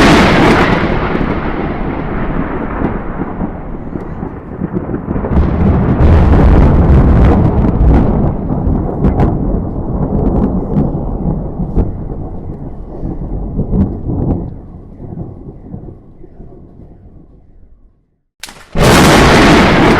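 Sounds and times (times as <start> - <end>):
thunder rumbling: 0.0 - 19.9
sharp clicks: 18.4 - 18.8.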